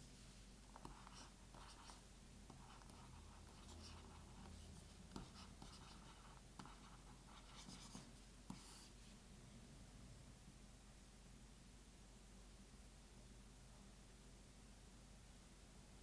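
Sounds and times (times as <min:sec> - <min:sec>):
stylus scratching on screen: 0:00.8 - 0:08.6.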